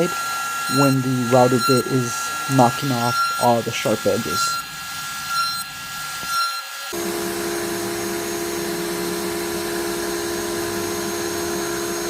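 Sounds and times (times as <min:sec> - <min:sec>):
electric power tool motor whine: 0:00.0 - 0:12.0.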